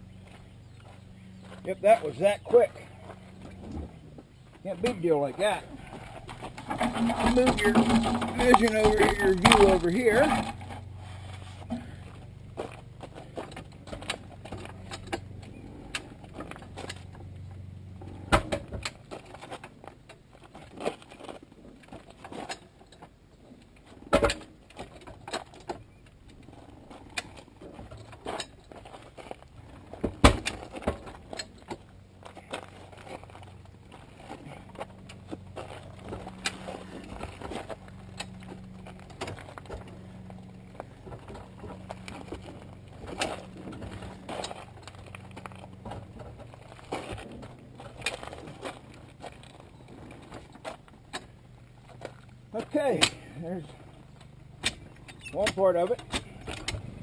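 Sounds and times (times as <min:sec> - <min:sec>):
low steady hum: 0:00.0 - 0:57.0
metal chain clinking and rattling: 0:06.3 - 0:10.9
sharp metal knocks: 0:06.6 - 0:10.8.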